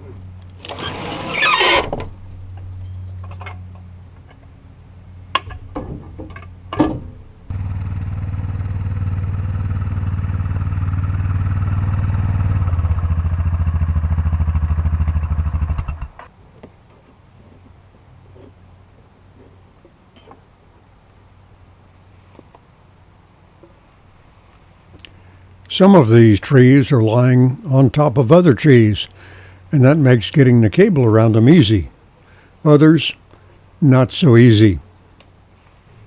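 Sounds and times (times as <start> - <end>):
atv engine idling and revving: 7.5 - 16.2.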